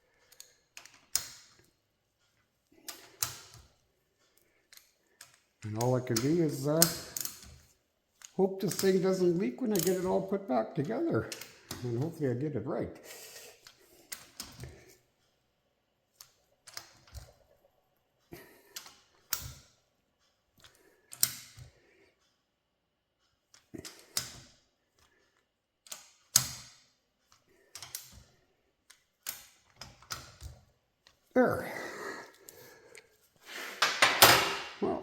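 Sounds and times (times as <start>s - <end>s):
metal tools clicking and knocking: 4.7s - 10.4s, 33.8s - 34.8s.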